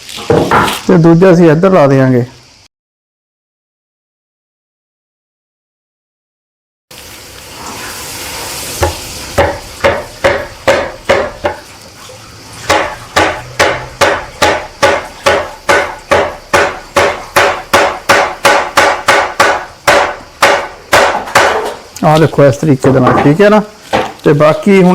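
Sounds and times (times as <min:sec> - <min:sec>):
hammer tapping: 0:08.8 - 0:11.6, 0:12.7 - 0:21.7.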